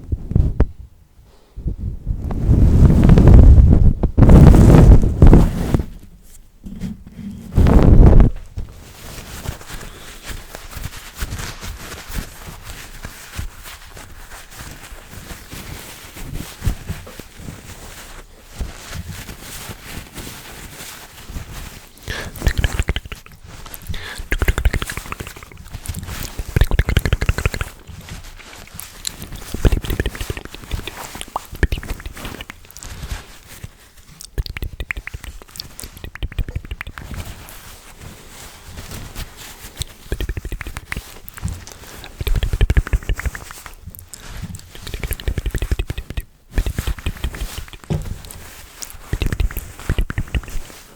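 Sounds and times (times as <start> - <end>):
crackly mouth clicks: 22.0 - 37.8, 39.5 - 50.9.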